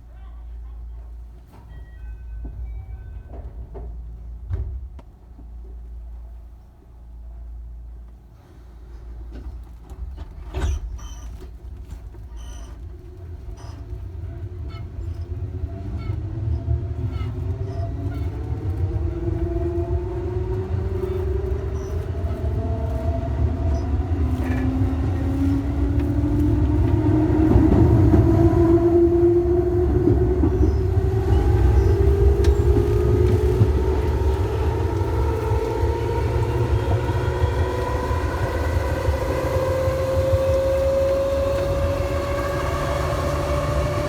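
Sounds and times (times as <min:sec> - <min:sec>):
low train rumble: 0:00.0 - 0:44.0
electric train motor whine: 0:15.6 - 0:44.0.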